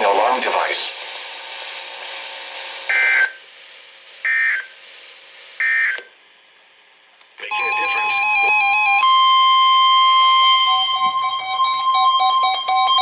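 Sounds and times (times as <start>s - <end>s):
faint radio hiss: 0.0s - 8.8s
two-tone digital data warbling: 7.5s - 13.0s.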